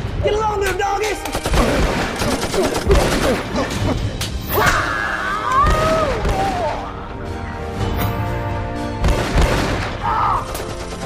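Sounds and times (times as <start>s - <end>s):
film music: 0.0s - 11.0s
gunfire volleys: 9.0s - 11.0s.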